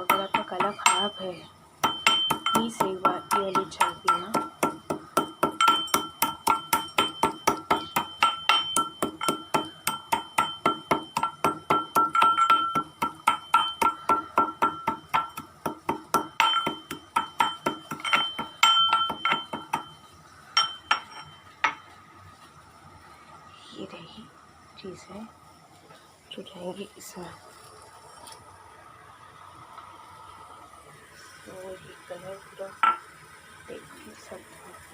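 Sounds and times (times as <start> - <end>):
mortar and pestle pounding: 0.0 - 1.2, 1.8 - 21.9.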